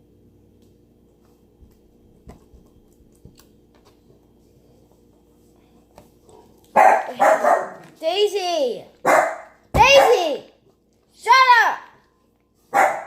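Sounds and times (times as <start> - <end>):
dog barking loudly: 6.7 - 7.8, 9.0 - 10.4, 12.7 - 13.0.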